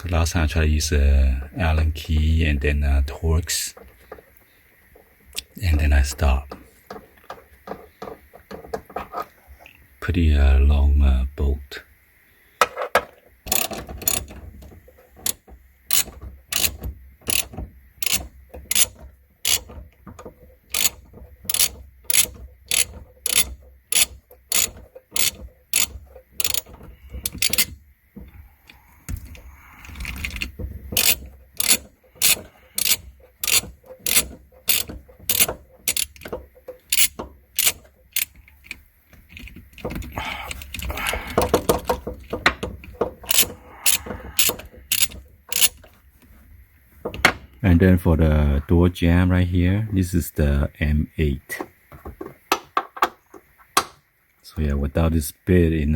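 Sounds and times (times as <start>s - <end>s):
ratchet wrench clicking: 13.5s - 27.8s, 28.7s - 45.9s.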